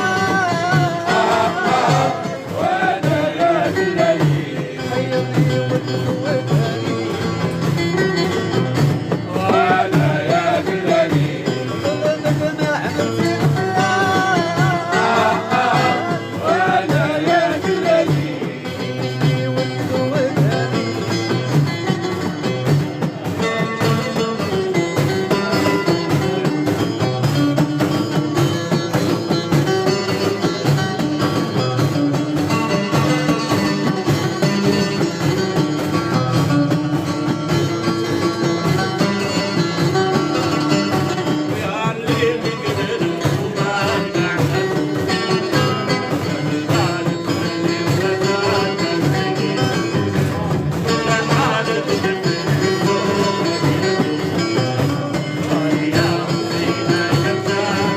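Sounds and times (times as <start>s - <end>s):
plucked string instruments: 0.0s - 57.9s
person singing: 46.6s - 57.9s.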